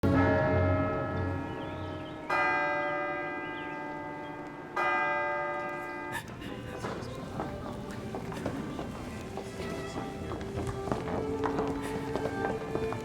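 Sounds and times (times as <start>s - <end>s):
church bell tolling: 0.0s - 7.0s.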